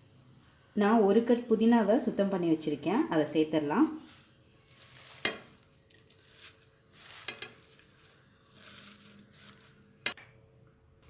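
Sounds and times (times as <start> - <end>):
mint leaves rustling: 4.7 - 9.9.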